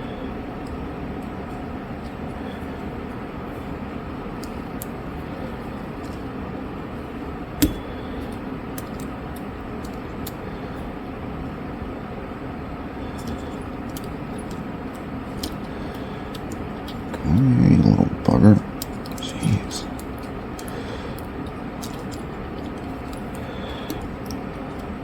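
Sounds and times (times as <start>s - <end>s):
low machinery hum: 0.0s - 25.0s.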